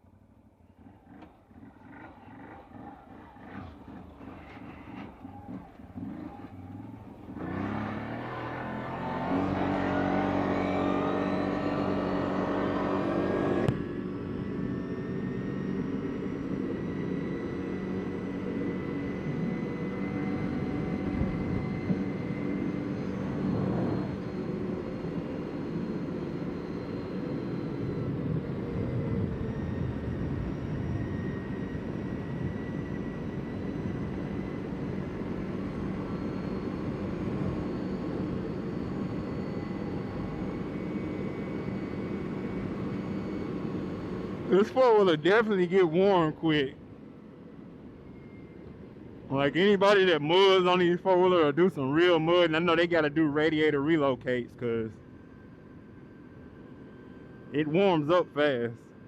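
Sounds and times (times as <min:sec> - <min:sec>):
atv engine accelerating: 0:00.7 - 0:46.6.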